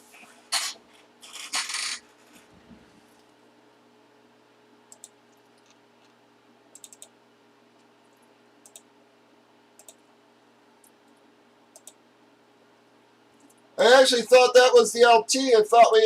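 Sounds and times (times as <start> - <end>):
faint room hum: 0.0 - 16.0.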